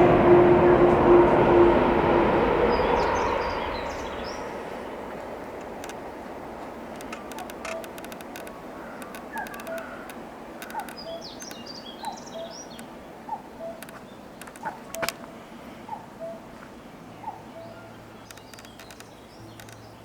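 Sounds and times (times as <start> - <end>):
sharp clicks: 5.6 - 6.1, 6.9 - 12.9, 13.8 - 15.2, 18.2 - 20.0
cuckoo calling: 7.0 - 15.2, 17.2 - 20.0
high bird chirps: 7.2 - 12.9, 18.2 - 20.0.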